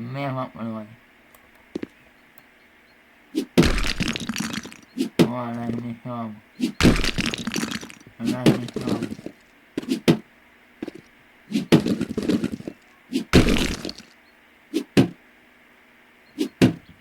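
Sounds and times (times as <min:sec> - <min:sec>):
sharp cracks and knocks: 0:03.4 - 0:05.8, 0:06.6 - 0:10.2, 0:10.8 - 0:14.1, 0:16.4 - 0:16.9.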